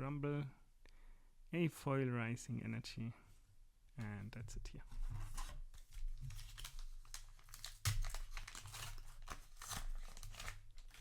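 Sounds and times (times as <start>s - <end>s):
plastic wrapper crinkling and tearing: 5.8s - 11.0s.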